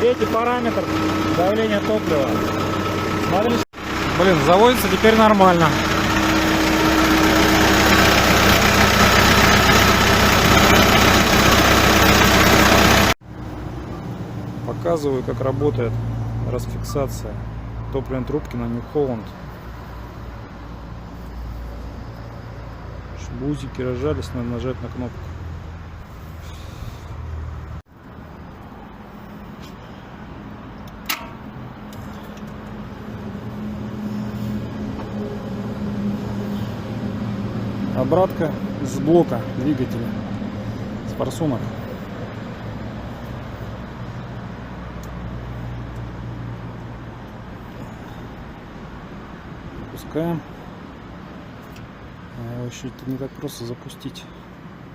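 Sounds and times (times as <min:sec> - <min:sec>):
diesel engine idling loudly: 0:00.0 - 0:16.6.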